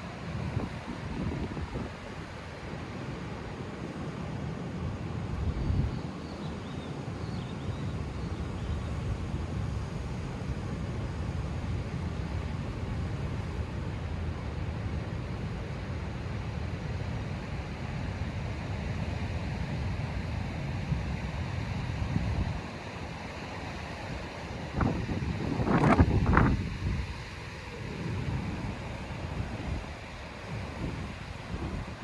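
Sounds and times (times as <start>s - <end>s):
surf washing onto beach: 0.0s - 5.5s, 9.1s - 32.0s
wind buffeting microphone: 24.7s - 27.2s, 27.8s - 32.0s.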